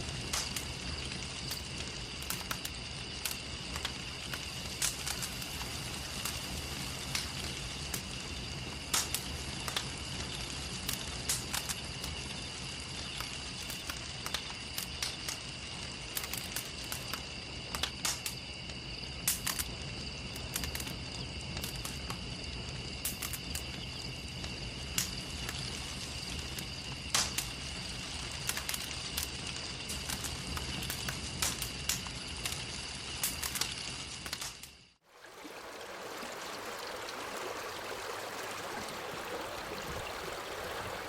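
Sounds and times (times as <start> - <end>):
wood fire crackling and popping: 0.0 - 35.0.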